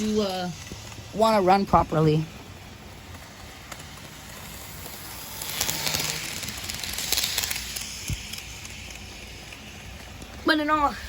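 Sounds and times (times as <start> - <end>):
model train clattering on track: 6.2 - 10.8.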